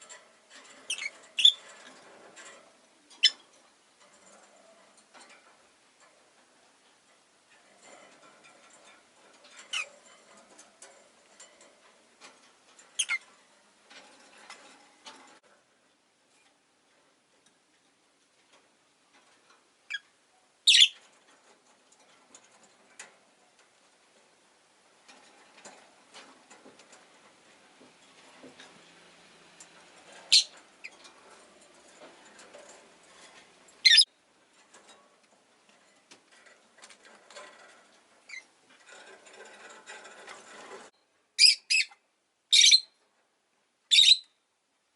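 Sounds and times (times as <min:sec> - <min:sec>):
faint scratching and clicking: 0:00.0 - 0:41.0
lovebird chirping: 0:00.9 - 0:01.6, 0:13.0 - 0:13.2, 0:20.6 - 0:21.0, 0:30.3 - 0:30.5, 0:33.8 - 0:34.1, 0:41.4 - 0:41.9, 0:42.5 - 0:42.9, 0:43.9 - 0:44.3.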